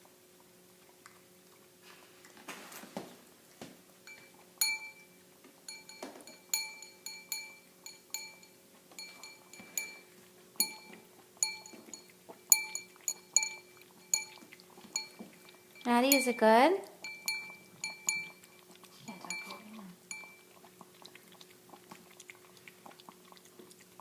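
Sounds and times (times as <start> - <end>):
bowl clinking: 4.1 - 20.6.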